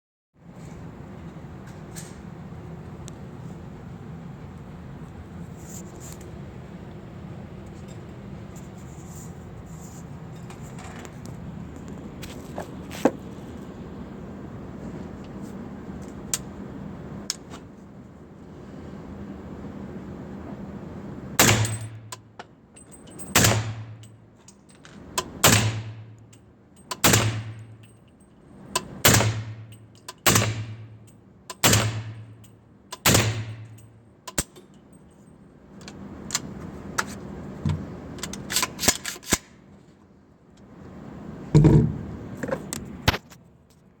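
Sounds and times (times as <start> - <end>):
heavy thump: 41.5 - 42.1.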